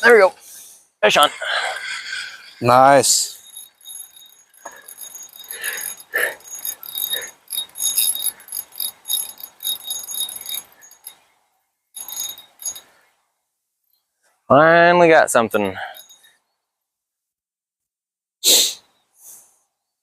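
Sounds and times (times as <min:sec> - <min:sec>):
fishing reel cranked: 0:03.0 - 0:11.2, 0:12.0 - 0:12.8, 0:15.8 - 0:16.2.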